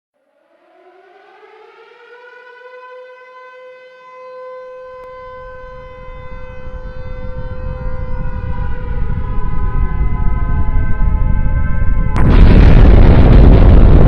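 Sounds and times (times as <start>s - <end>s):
low rumble: 5.6s - 14.0s.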